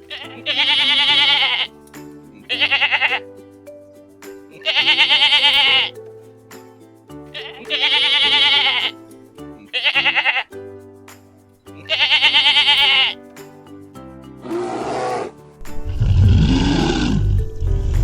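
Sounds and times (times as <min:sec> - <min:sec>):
background music with low chords: 0:00.0 - 0:18.0
loud wavering bleats: 0:00.1 - 0:01.7, 0:02.5 - 0:03.2, 0:04.6 - 0:05.9, 0:07.4 - 0:08.9, 0:09.6 - 0:10.6, 0:11.8 - 0:13.2, 0:16.0 - 0:17.4.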